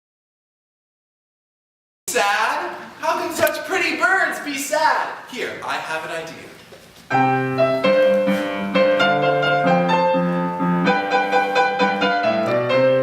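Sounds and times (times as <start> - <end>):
bouncy piano music: 7.1 - 13.0.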